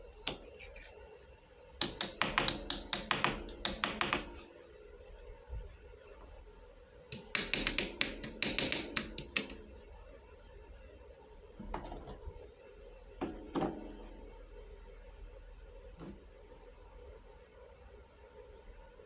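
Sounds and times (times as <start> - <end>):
toy kitchen pieces clicking: 7.2 - 9.6.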